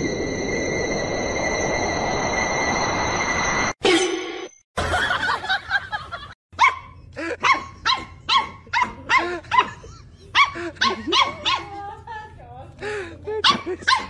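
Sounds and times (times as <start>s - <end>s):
dog barking: 6.6s - 9.8s, 10.4s - 11.8s, 13.4s - 14.0s.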